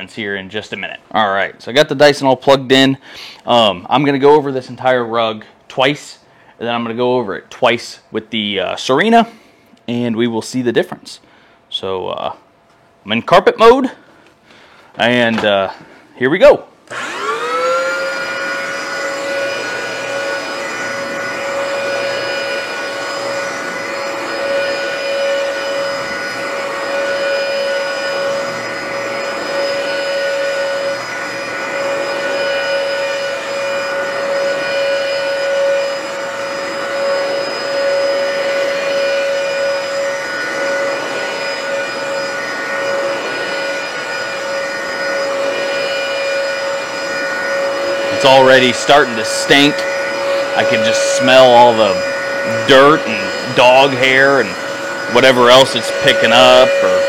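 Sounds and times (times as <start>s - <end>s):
vacuum cleaner motor whining: 16.8s - 57.0s.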